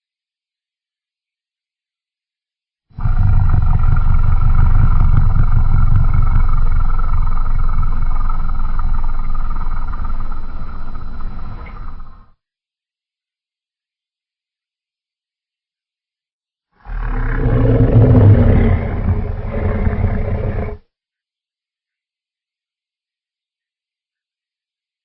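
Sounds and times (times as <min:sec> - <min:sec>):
monster roar: 0:03.0 - 0:12.2, 0:16.8 - 0:20.8.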